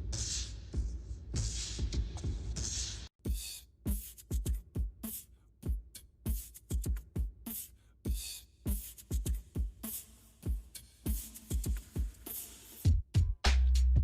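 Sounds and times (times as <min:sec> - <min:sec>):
electronic dance music beat: 0:03.2 - 0:13.8.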